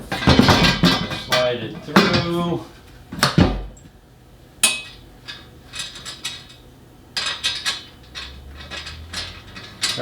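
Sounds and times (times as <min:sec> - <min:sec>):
metal hardware clinking: 0:04.6 - 0:06.6, 0:07.2 - 0:10.0.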